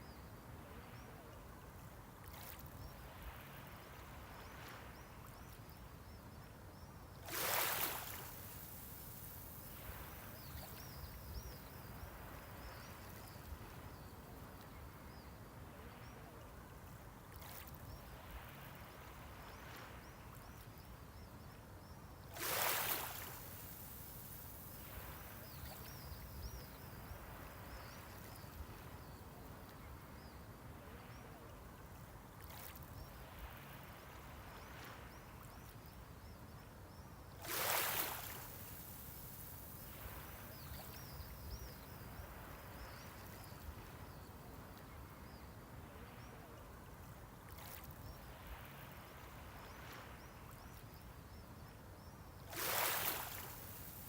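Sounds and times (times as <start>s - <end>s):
waves breaking on shore: 7.2s - 13.9s, 22.3s - 29.0s, 37.4s - 44.1s, 52.4s - 54.0s.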